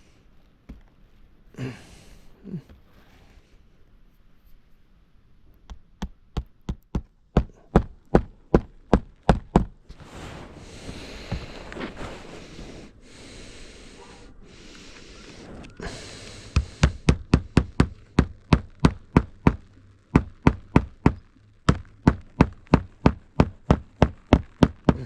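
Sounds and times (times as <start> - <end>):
hammer driving nails into shingles: 5.7 - 9.9, 16.5 - 25.0.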